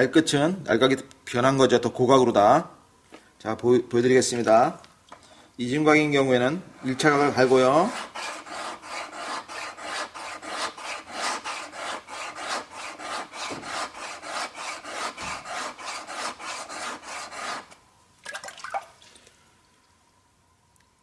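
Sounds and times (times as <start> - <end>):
steel rubbing on sharpening plate: 7.2 - 17.8.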